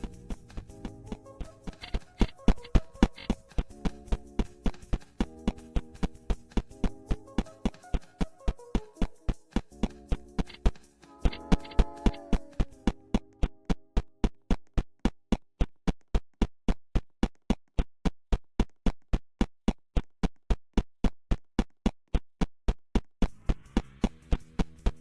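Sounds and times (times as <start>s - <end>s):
drum machine beat: 11.3s - 13.1s.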